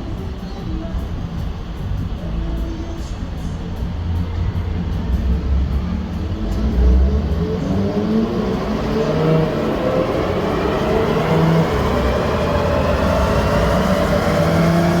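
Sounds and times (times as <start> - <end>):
car engine revving on dyno: 5.0 - 15.0.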